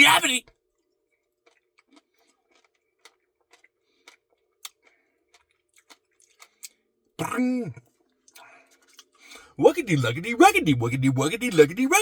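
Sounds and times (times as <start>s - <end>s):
eating clicks and smacks: 0.5s - 6.8s.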